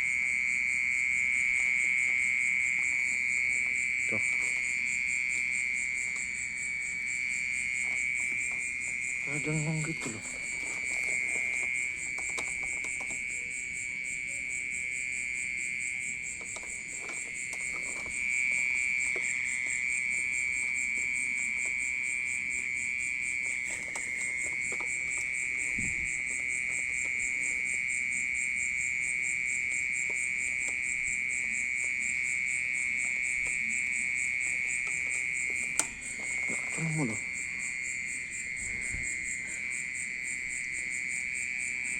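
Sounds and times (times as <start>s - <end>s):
insect trilling: 0.0s - 41.9s.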